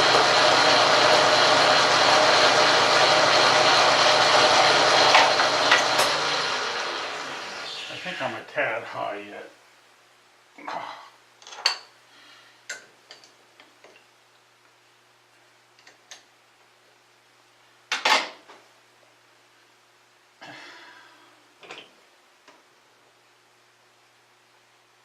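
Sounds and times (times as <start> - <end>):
faint steady hum: 6.8 - 25.0.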